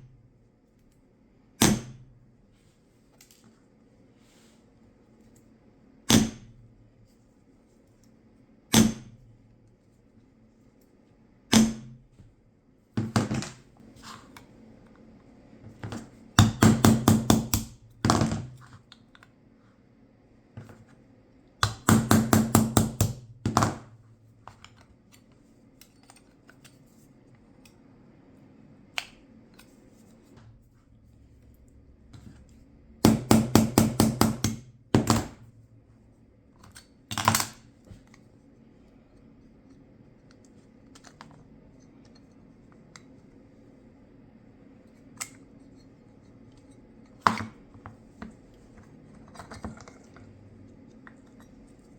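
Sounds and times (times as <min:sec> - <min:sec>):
hammer tapping on metal: 0:33.0 - 0:35.4.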